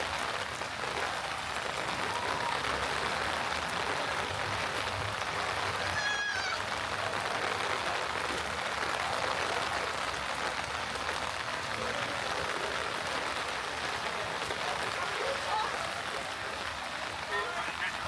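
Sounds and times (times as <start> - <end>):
heavy rain on street: 0.0 - 18.0.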